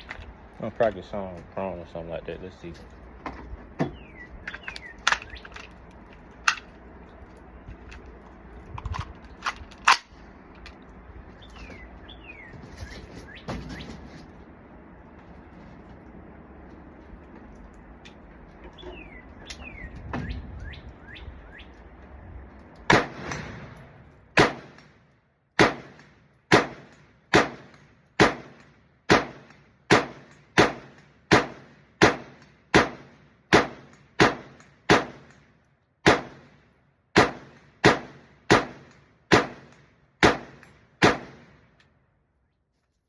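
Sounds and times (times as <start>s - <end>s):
birds chirping: 2.4s - 6.2s, 10.9s - 14.2s, 18.2s - 22.1s
airsoft rifle shots: 22.9s - 23.8s, 24.4s - 24.9s, 25.6s - 35.3s, 36.0s - 36.6s, 37.2s - 41.6s.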